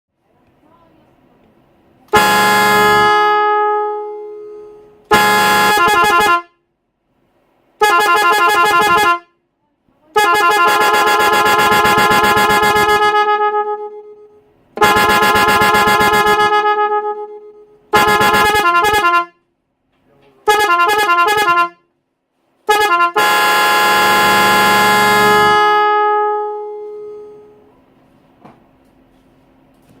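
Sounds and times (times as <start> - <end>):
electronic car horn warbling: 2.1 - 6.6, 7.8 - 9.4, 10.1 - 19.5, 20.4 - 21.9, 22.7 - 27.7.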